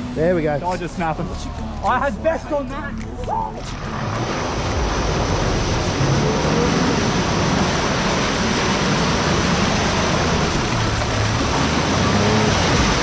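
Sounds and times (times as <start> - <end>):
water rushing and splashing: 0.0 - 13.0
vehicle engine running: 3.6 - 13.0.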